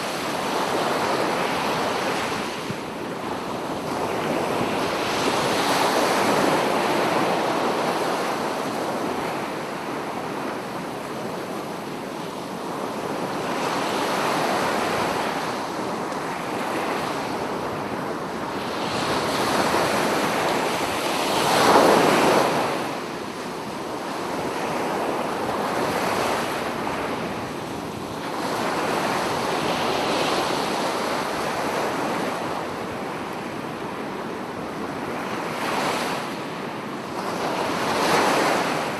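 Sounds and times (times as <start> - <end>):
waves breaking on a beach: 0.0 - 38.9.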